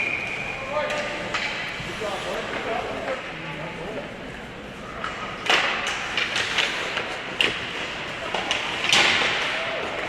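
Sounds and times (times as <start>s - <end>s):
hockey sticks and puck clacking: 0.0s - 1.8s, 5.0s - 10.0s
skates scraping on ice: 5.6s - 8.8s.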